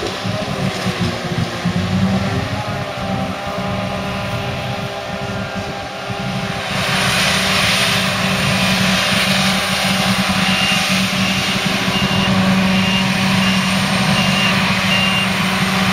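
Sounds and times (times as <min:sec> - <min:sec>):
heavy diesel machinery running: 0:00.0 - 0:15.9
reversing alarm beeping: 0:09.9 - 0:15.9.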